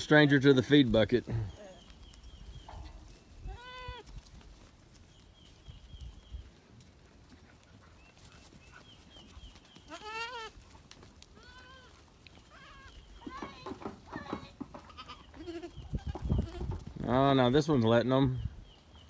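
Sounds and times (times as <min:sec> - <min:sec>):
goats bleating: 0:03.5 - 0:04.0, 0:09.8 - 0:10.6, 0:11.4 - 0:13.4, 0:14.8 - 0:16.7.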